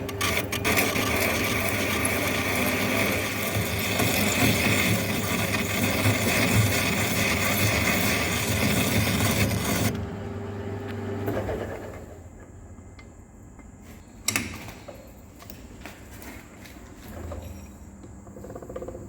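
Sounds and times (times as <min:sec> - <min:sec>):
power tool cutting steel: 0:00.0 - 0:09.9.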